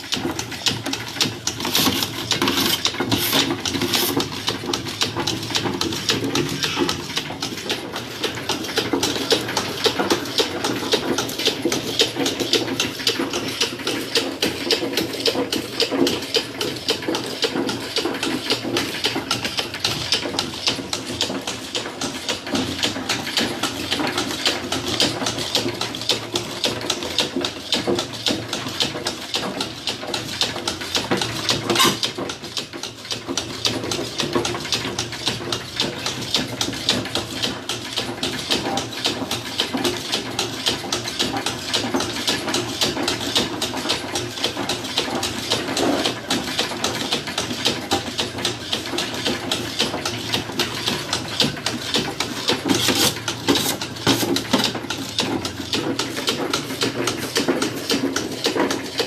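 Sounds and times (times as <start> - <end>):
grinding machine clatter: 0.0 - 59.0.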